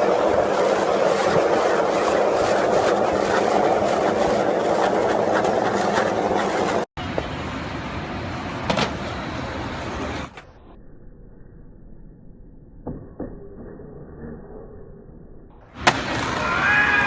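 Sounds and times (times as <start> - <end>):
skateboard wheels rolling on pavement: 0.0 - 10.5, 15.7 - 17.0
skateboard clack: 15.7 - 16.6.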